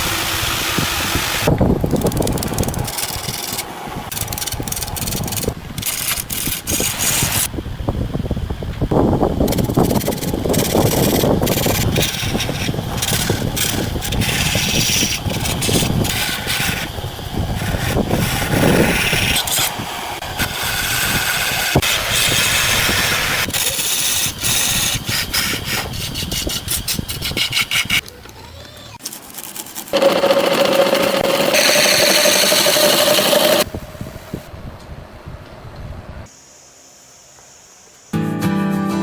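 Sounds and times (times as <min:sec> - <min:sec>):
power tool grinding wood: 0:00.0 - 0:01.5, 0:10.5 - 0:28.0, 0:29.9 - 0:33.7.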